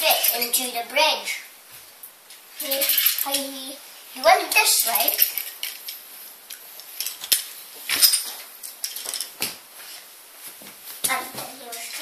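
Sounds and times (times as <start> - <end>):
toy trains clicking and clattering: 4.5 - 6.0.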